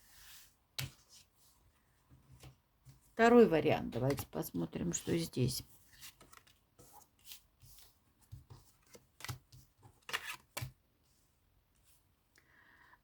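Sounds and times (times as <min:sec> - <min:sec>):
cards shuffling: 0:05.9 - 0:10.7.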